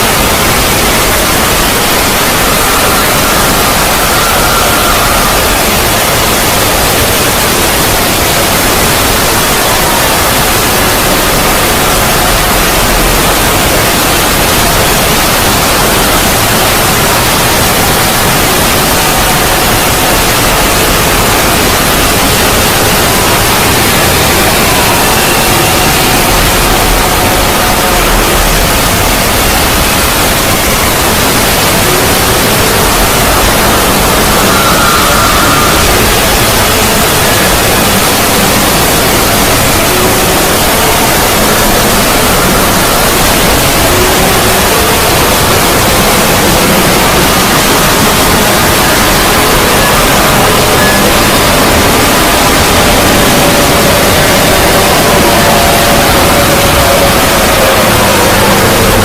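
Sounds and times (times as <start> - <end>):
loud static hiss: 0.0 - 59.0.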